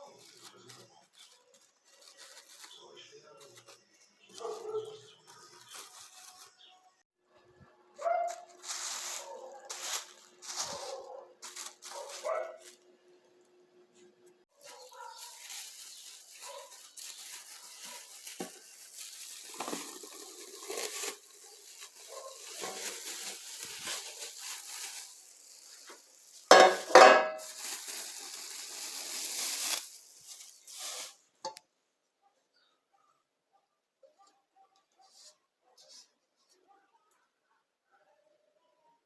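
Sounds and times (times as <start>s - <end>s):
utensils scraping and stirring: 14.6s - 31.6s
utensils clattering: 17.6s - 28.3s.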